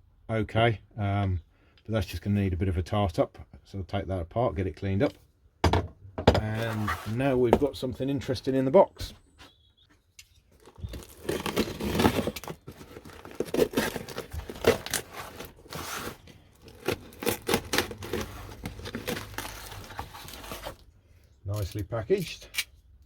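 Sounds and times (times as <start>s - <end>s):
packaging tearing and crinkling: 10.6s - 20.9s.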